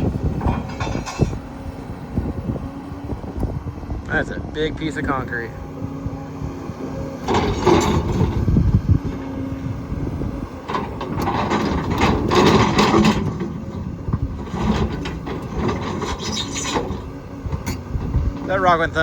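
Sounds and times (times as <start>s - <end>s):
excavator diesel engine: 0.0s - 19.0s
concrete scraping and clunking: 0.4s - 1.4s, 7.2s - 8.4s, 10.6s - 18.6s.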